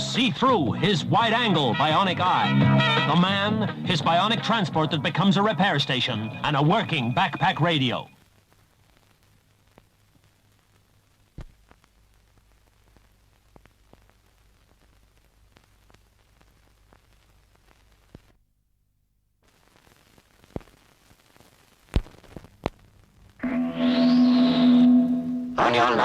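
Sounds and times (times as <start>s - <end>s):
videotape hiss and hum: 0.0s - 18.4s, 19.4s - 26.0s
clicks and pops: 11.4s - 11.9s, 21.9s - 22.8s.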